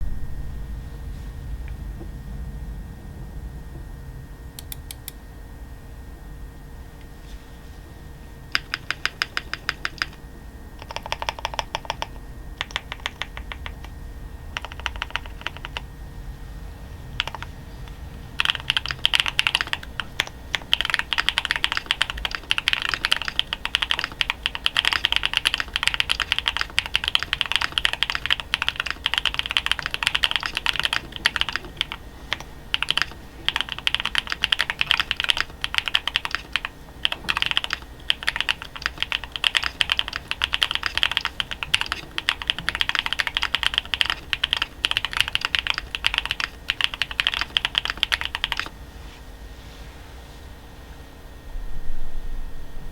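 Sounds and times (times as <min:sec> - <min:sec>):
mechanical keyboard typing: 0:08.5 - 0:10.2, 0:10.8 - 0:13.9, 0:14.6 - 0:15.9, 0:17.2 - 0:48.7.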